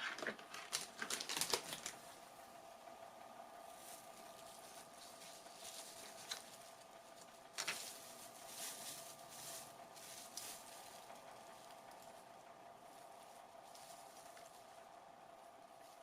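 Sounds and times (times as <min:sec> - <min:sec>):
rummaging small items: 0:00.0 - 0:02.1, 0:03.7 - 0:12.1
faint steady hum: 0:00.0 - 0:16.0.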